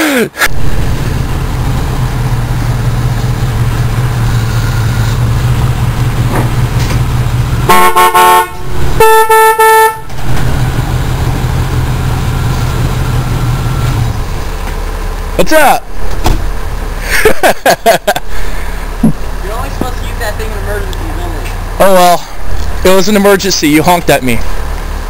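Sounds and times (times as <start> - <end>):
low rumble: 0.5 - 9.3, 10.0 - 17.0
car horn honking: 4.1 - 5.4, 7.6 - 10.1.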